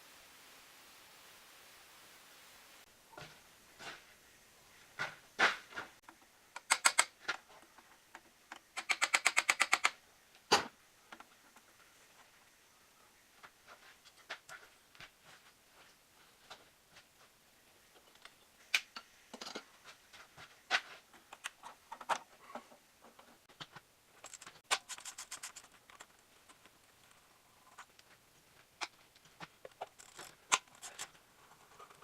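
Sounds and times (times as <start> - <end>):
rapid clicks: 8.6 - 10.0.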